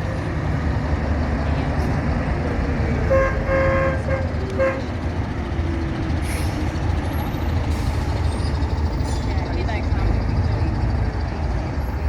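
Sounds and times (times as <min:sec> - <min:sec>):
heavy vehicles rumbling past: 0:00.0 - 0:12.0
truck horn blasts: 0:03.1 - 0:04.9.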